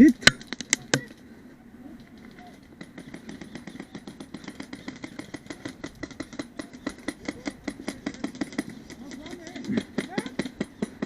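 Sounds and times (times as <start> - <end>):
airsoft guns firing: 2.4 - 11.0.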